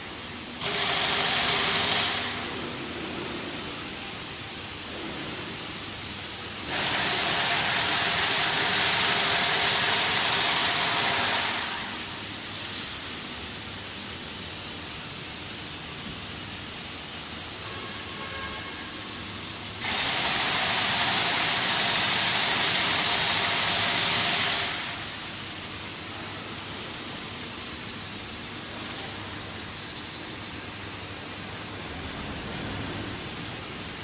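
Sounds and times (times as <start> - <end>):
loud hiss: 6.6 - 12.9, 19.8 - 26.0.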